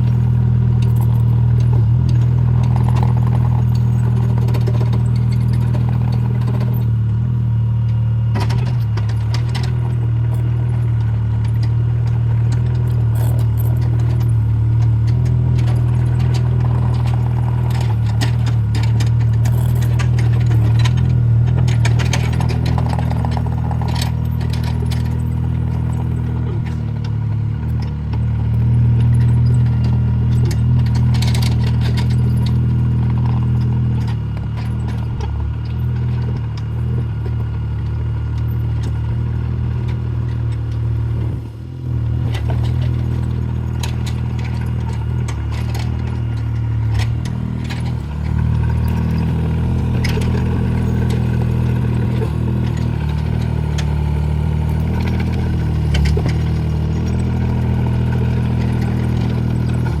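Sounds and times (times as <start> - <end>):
excavator diesel engine: 0.0 - 60.0
metal clanks and rattles: 0.0 - 60.0.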